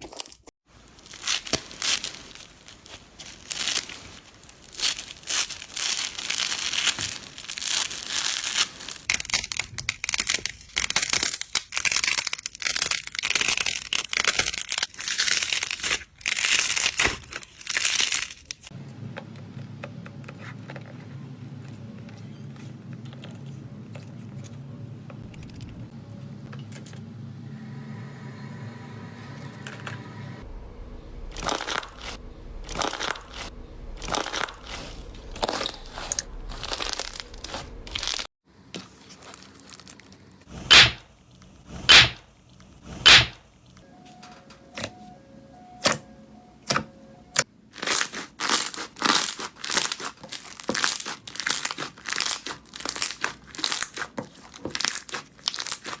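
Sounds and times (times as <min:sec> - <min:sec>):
slime crackling and crunching: 0:00.1 - 0:18.7, 0:31.3 - 0:41.1, 0:47.8 - 0:56.0.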